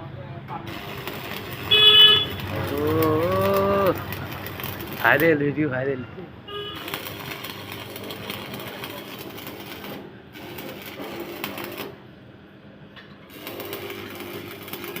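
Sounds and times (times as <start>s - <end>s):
welding arc crackling and buzzing: 0.7s - 5.6s, 6.5s - 12.1s, 13.3s - 15.0s
steady electrical hum: 0.7s - 15.0s.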